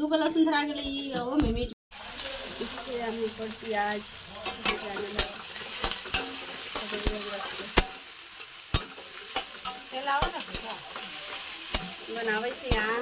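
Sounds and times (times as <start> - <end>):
onions sizzling in oil: 1.9 - 13.0
metal spoon knocking on pan: 8.8 - 13.0.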